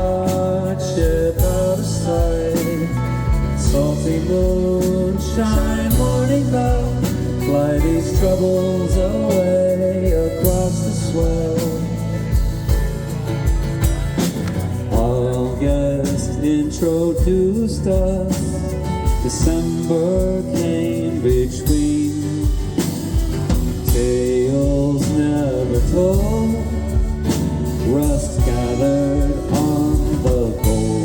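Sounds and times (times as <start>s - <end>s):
live band playing folk music: 0.0s - 31.0s
steady bass beat: 0.0s - 31.0s.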